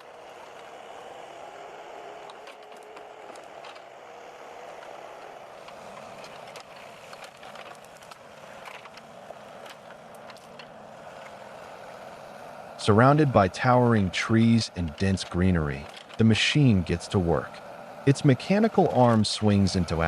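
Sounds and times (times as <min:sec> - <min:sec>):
machine clicks and crackles: 0:00.0 - 0:12.0, 0:14.9 - 0:16.3
forestry machine engine running: 0:00.0 - 0:20.0.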